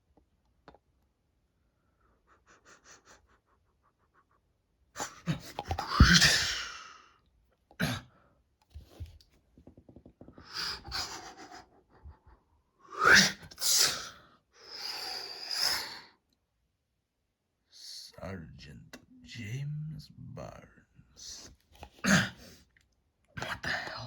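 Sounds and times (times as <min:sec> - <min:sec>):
person gasping: 0:05.0 - 0:07.2.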